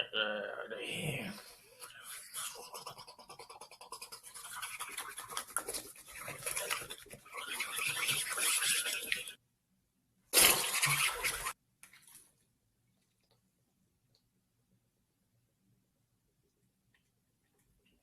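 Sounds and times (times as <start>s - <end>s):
person making rasping mouth rattle: 1.9s - 9.4s.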